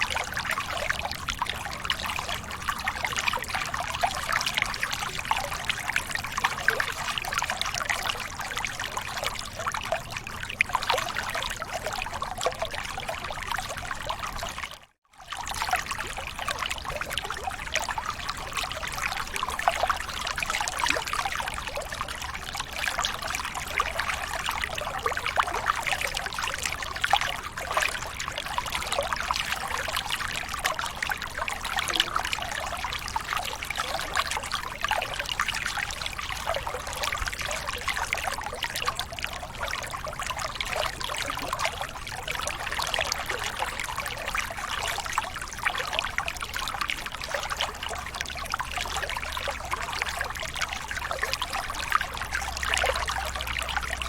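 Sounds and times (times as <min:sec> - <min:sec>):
water trickling: 0:00.0 - 0:54.0.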